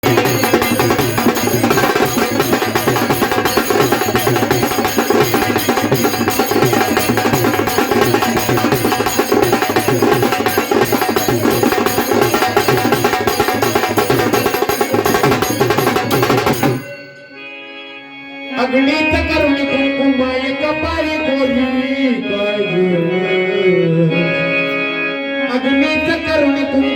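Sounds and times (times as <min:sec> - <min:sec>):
fast dense drums: 0:00.0 - 0:16.8
instrumental devotional music: 0:00.0 - 0:26.9.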